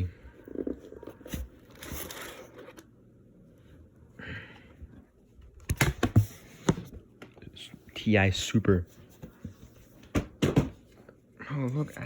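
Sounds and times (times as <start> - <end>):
packaging rustling and scraping: 0.5 - 2.9.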